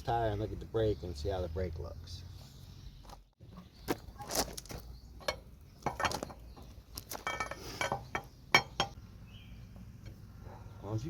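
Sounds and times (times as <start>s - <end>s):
lug wrench clinking on nuts: 5.2s - 9.0s.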